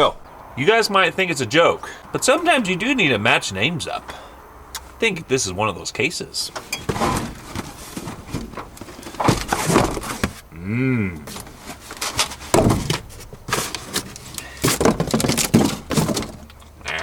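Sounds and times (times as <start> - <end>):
tools clattering: 6.5 - 10.5, 11.2 - 16.8.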